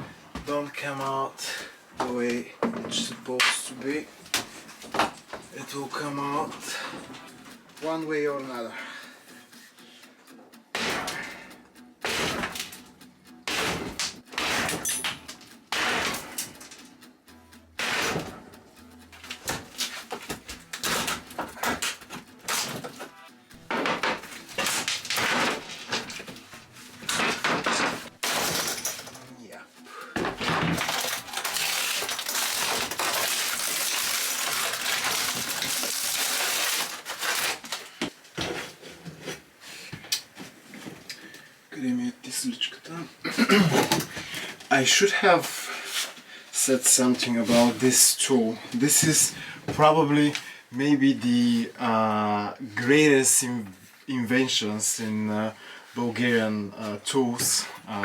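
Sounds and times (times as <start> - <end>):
falling debris: 27.1 - 29.3
material smashing and crunching: 30.4 - 37.7.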